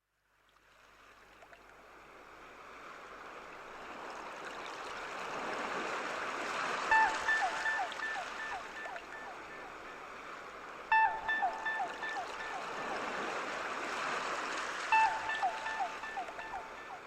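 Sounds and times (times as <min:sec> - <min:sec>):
sea surf rushing: 0:05.1 - 0:17.0
short high falling calls: 0:10.9 - 0:13.1, 0:14.9 - 0:17.0.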